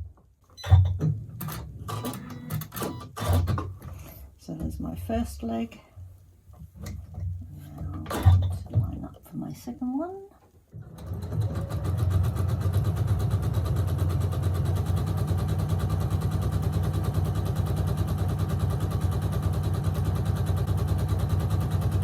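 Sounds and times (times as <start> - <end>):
sewing machine running: 10.8 - 22.0.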